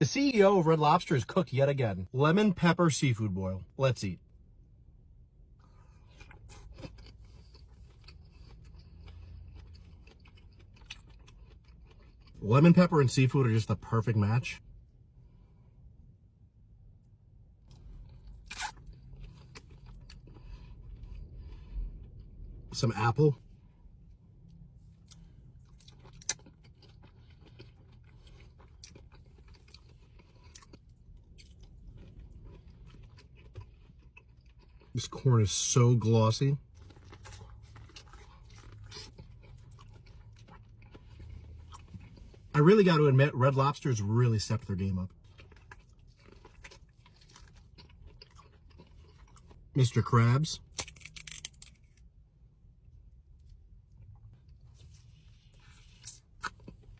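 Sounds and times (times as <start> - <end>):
low steady hum: 0.0 - 56.9
person chewing: 5.5 - 12.8, 17.6 - 43.3, 44.0 - 52.2, 52.9 - 56.9.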